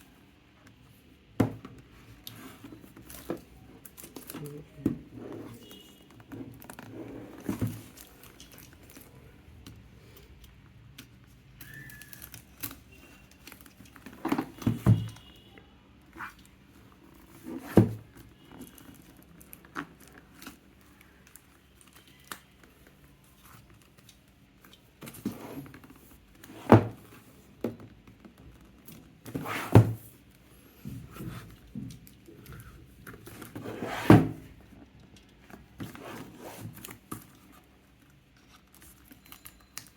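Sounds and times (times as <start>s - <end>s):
box thunks and knocks: 1.4s - 1.8s, 14.3s - 15.2s, 17.5s - 18.0s, 29.3s - 30.1s, 33.6s - 34.5s.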